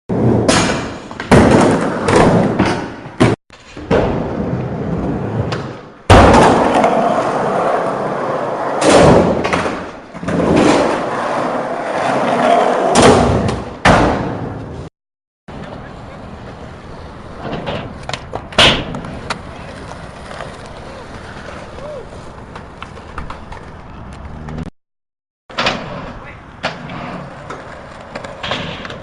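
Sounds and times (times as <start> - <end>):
skateboard thuds and slaps landing: 0.1 - 4.4, 5.5 - 7.2, 8.8 - 10.9, 12.8 - 14.8, 17.5 - 19.4
skateboard rolling on hard ground: 0.1 - 13.6, 15.5 - 24.7, 25.6 - 29.0.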